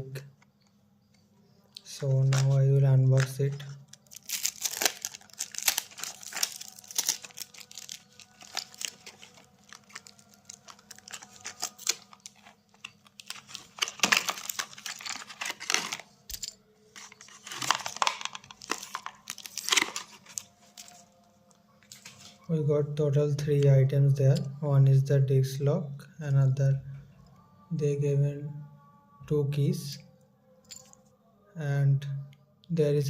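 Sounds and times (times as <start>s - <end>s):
packaging crinkling and tearing: 2.0s - 16.1s, 16.9s - 22.4s.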